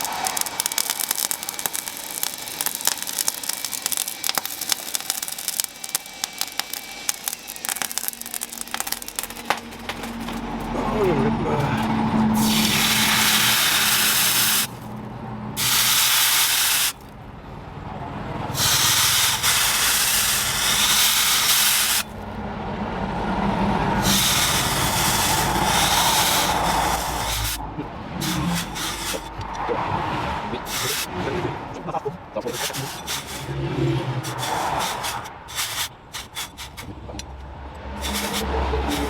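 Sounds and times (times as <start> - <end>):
pressurised jet hissing: 12.4 - 14.9, 15.6 - 17.0, 18.6 - 22.1, 24.0 - 27.6, 28.2 - 29.3, 30.6 - 31.1, 32.5 - 33.6, 34.2 - 36.9, 38.0 - 39.0.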